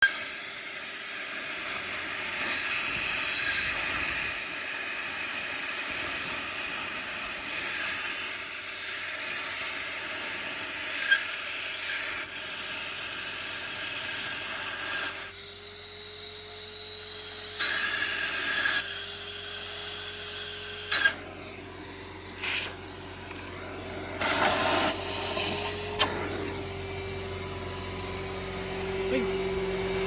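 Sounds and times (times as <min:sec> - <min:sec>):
compressed air hissing: 0:00.4 - 0:15.3, 0:22.2 - 0:23.1, 0:24.1 - 0:26.5.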